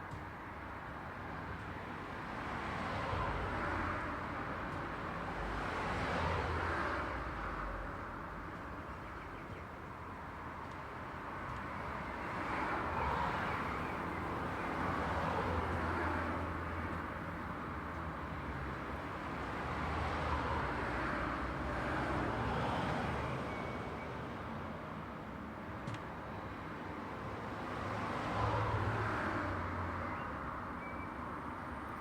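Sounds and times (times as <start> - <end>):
cars passing by: 2.1 - 9.0, 10.4 - 32.0.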